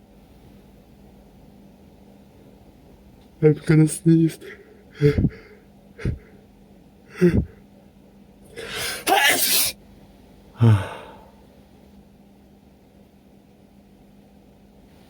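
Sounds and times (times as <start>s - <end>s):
person breathing in: 5.0s - 6.4s, 8.6s - 9.7s, 10.6s - 11.4s
person gasping: 5.0s - 6.4s, 7.1s - 7.6s, 8.6s - 9.7s, 10.6s - 11.4s
person sneezing loudly: 8.6s - 9.8s, 10.6s - 11.3s.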